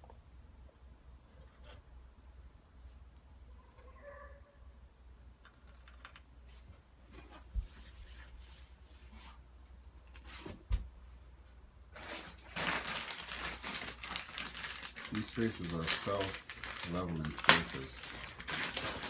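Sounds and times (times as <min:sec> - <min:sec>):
rustling scrape: 0:12.0 - 0:15.2, 0:15.8 - 0:19.0.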